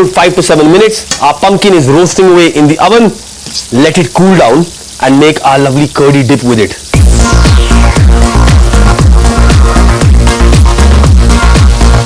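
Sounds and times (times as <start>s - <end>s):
electronic dance music: 6.9s - 12.0s.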